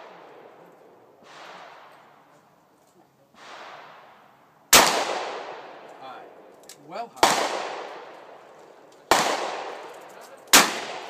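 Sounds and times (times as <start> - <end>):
distant gunshots with echo: 1.2 - 2.3, 3.4 - 6.5, 7.2 - 11.0
loud handgun shot: 3.4 - 5.9, 7.2 - 8.4, 9.1 - 9.9, 10.5 - 11.0.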